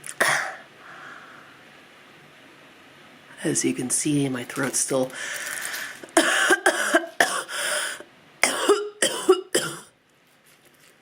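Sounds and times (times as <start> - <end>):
woman coughing: 0.2 - 0.6, 6.2 - 7.6, 8.4 - 9.9.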